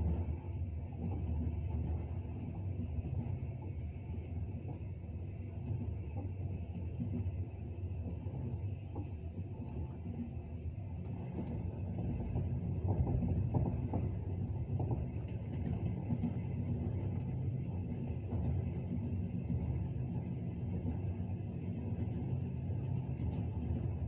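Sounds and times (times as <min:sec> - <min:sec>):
train low rumble: 0:00.0 - 0:24.0.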